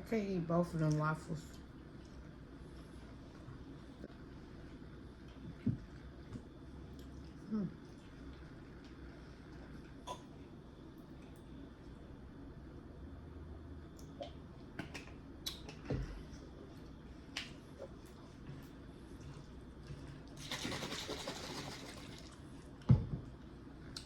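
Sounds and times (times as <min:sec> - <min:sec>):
chewing food: 0:04.6 - 0:11.9, 0:13.9 - 0:22.9.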